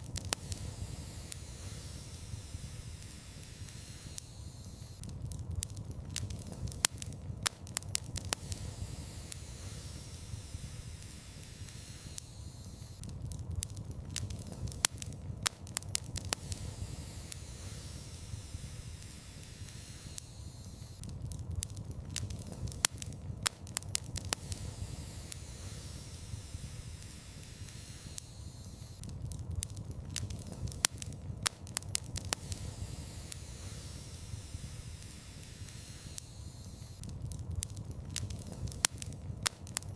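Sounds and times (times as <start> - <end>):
low steady rumble: 0.0 - 12.0, 12.7 - 20.1, 20.7 - 28.2
wood fire crackling: 0.0 - 39.9.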